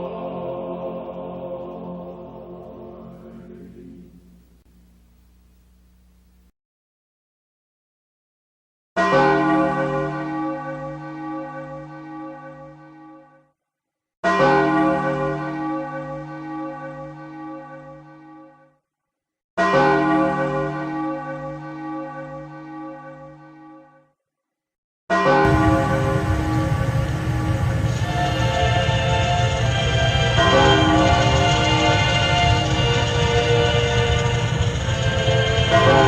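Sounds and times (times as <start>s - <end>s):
large bell tolling: 25.3s - 36.0s
loud dense sound: 25.4s - 36.0s.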